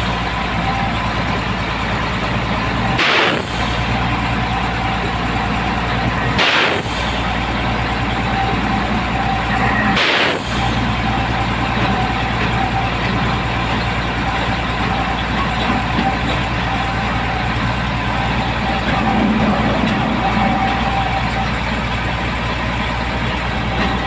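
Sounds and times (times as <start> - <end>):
truck engine idling: 0.0 - 24.0
sharp burst of noise: 2.9 - 12.8.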